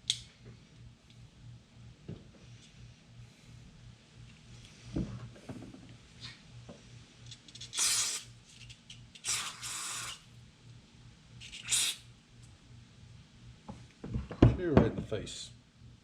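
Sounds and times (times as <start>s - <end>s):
aerosol spray hissing: 7.8s - 8.3s, 11.6s - 12.0s.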